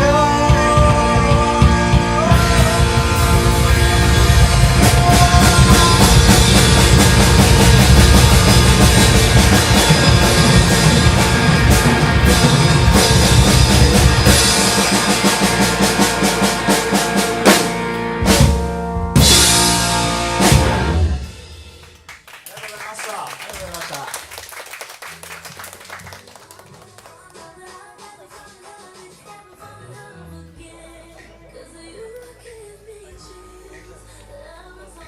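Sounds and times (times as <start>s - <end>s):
rock band playing: 0.0s - 22.3s
loud drum strikes: 0.5s - 21.9s.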